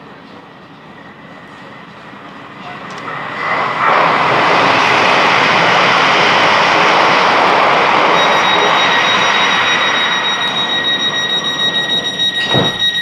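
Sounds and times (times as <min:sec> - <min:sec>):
train rushing: 0:00.0 - 0:13.0
high whine: 0:00.7 - 0:13.0.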